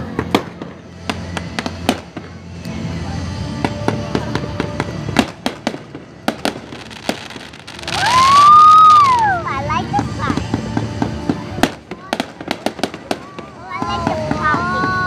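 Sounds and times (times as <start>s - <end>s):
fireworks bangs and pops: 0.0s - 2.8s, 3.5s - 15.0s
rising firework whistle: 5.2s - 9.7s.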